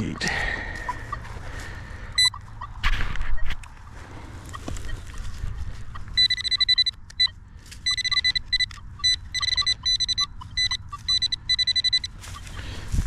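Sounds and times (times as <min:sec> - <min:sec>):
metal detector pinpointer beeping: 0:02.2 - 0:02.4, 0:06.0 - 0:12.4
scuffing from digging in dirt: 0:12.1 - 0:13.0.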